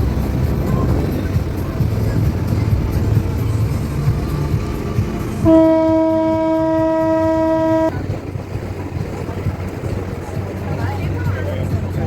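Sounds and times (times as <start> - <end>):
low rumble: 0.0 - 12.0
horn blast: 5.3 - 7.9.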